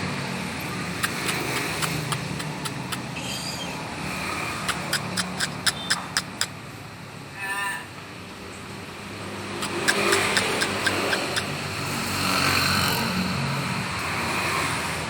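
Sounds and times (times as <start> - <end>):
bird call notes: 4.7 - 6.5, 9.6 - 11.5.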